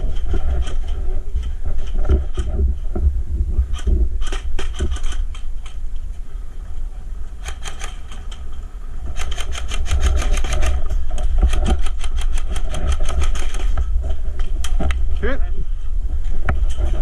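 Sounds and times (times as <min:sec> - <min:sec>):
steady low rumble: 0:00.0 - 0:17.0
airsoft guns firing: 0:09.1 - 0:10.8, 0:11.5 - 0:13.7.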